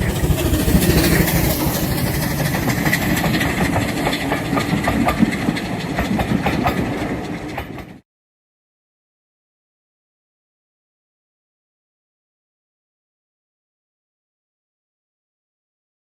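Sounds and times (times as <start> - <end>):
train running by: 0.0 - 8.0
wheels clicking over rail joints: 0.0 - 8.0.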